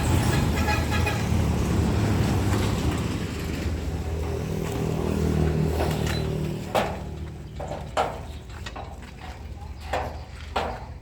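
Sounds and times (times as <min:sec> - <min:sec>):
engine running: 0:01.3 - 0:09.1.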